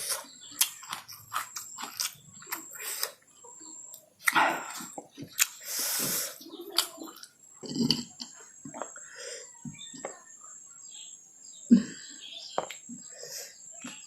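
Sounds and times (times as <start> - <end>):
chewing food: 0.0 - 10.3
wet mouth clicks: 3.9 - 5.6.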